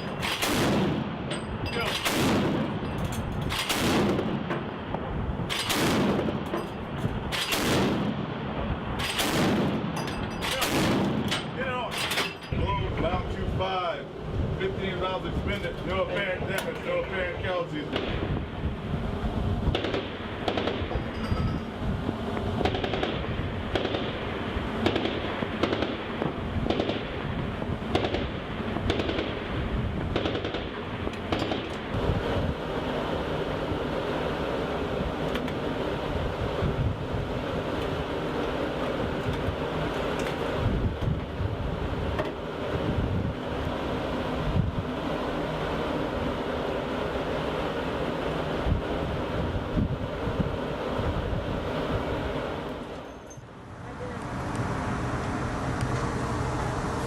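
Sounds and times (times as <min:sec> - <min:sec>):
machinery rumble: 0:00.0 - 0:57.0
wind: 0:00.0 - 0:57.0
naval gun firing: 0:00.2 - 0:02.8, 0:03.5 - 0:04.5, 0:05.4 - 0:06.5, 0:07.3 - 0:08.4, 0:09.0 - 0:11.8, 0:17.9 - 0:18.3, 0:19.7 - 0:21.0, 0:22.6 - 0:27.2, 0:27.9 - 0:29.5, 0:30.1 - 0:31.7
distant gunshots: 0:10.6 - 0:11.3, 0:19.7 - 0:20.9, 0:22.6 - 0:27.2, 0:27.9 - 0:29.5, 0:30.1 - 0:31.7.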